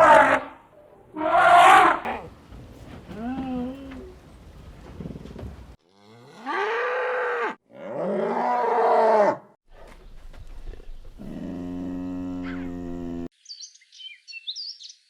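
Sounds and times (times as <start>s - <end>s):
cattle mooing: 5.9s - 9.4s, 11.2s - 13.3s.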